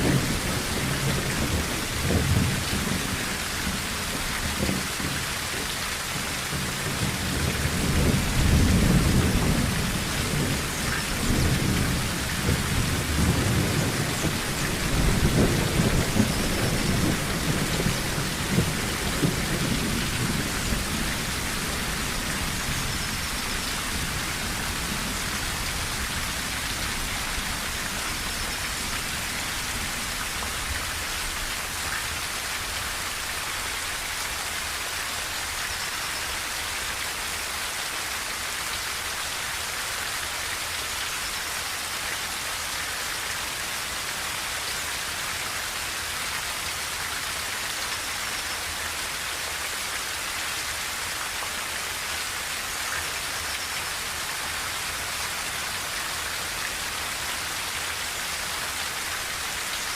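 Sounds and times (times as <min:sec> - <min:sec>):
heavy rain on a tin roof: 0:00.0 - 0:59.9
low thunder rumble: 0:06.5 - 0:30.8.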